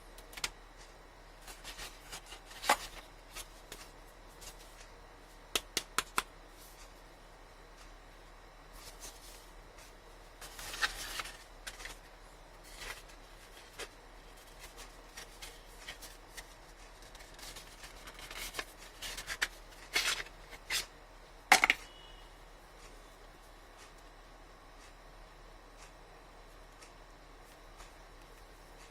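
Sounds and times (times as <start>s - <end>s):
packaging rustling: 10.4s - 20.9s.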